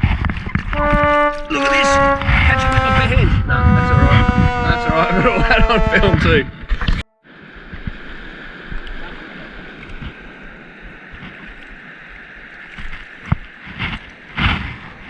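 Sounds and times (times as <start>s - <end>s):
wind rumbling on microphone: 0.0s - 15.0s
sea water washing around rocks: 7.4s - 15.0s.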